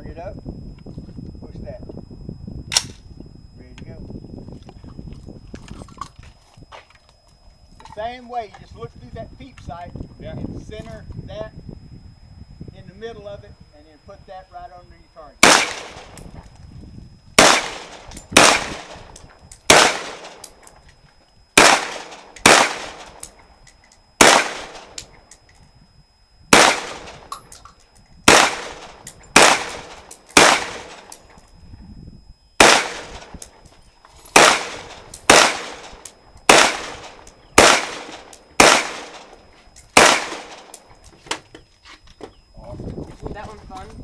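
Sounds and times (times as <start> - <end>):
rifle shots echoing: 15.4 - 16.2, 17.4 - 20.5, 21.6 - 23.3, 24.2 - 25.0, 26.5 - 27.3, 28.3 - 31.2, 32.6 - 33.5, 34.3 - 40.9.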